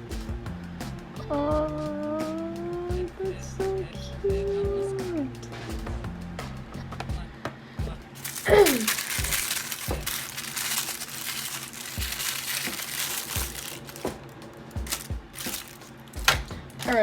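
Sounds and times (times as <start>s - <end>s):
plastic packaging crinkling: 8.2s - 17.0s.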